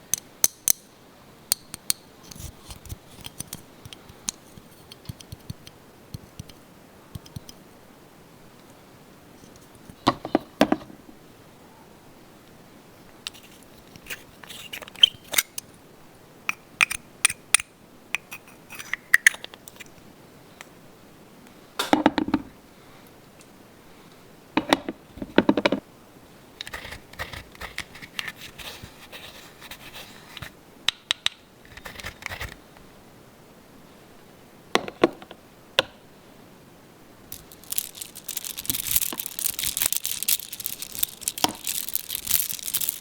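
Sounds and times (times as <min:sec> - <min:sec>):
plastic toy parts clicking: 0:01.5 - 0:06.6, 0:07.2 - 0:07.6, 0:37.3 - 0:43.0
scraping and rustling: 0:37.3 - 0:43.0.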